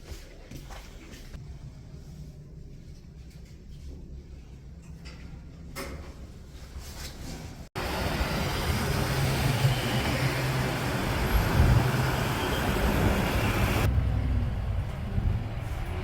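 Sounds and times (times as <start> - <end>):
road vehicle rumble: 7.8 - 16.0.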